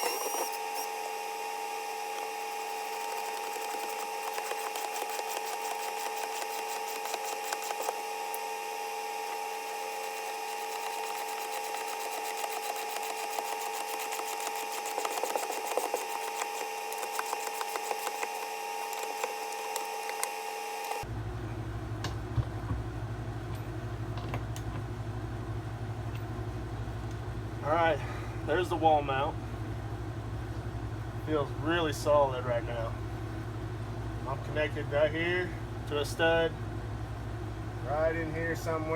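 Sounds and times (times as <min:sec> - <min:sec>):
power tool motor whining: 0:00.0 - 0:21.0.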